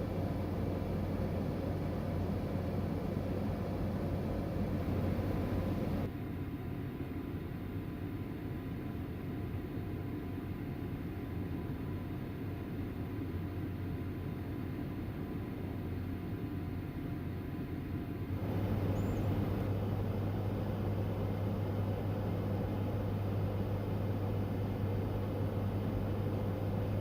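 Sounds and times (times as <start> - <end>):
car hum with road noise: 2.5 - 6.1.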